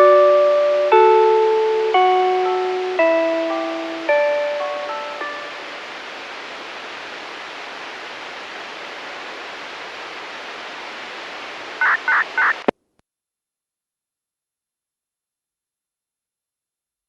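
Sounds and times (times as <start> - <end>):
radio hiss: 5.5 - 12.7.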